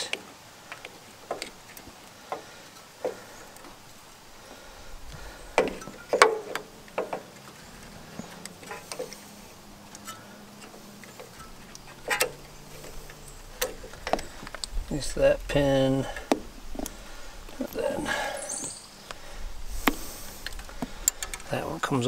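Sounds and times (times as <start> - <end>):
metal parts and tools clicking: 5.6 - 14.8, 20.4 - 21.6.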